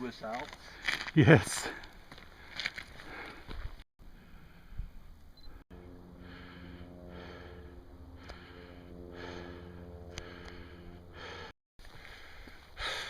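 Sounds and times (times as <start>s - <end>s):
person breathing hard: 2.3s - 5.0s, 6.0s - 13.0s
steady low hum: 4.0s - 13.0s.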